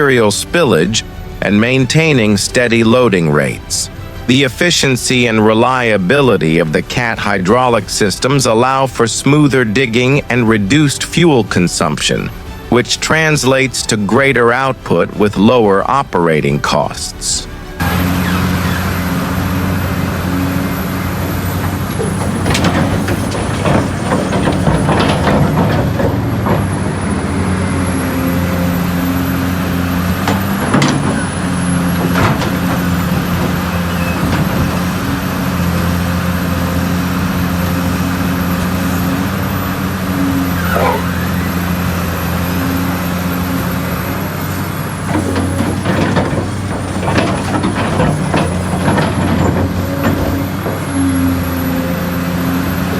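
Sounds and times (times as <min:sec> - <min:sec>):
excavator diesel engine running: 0:00.0 - 0:52.9
rock and dirt clattering: 0:20.0 - 0:52.9.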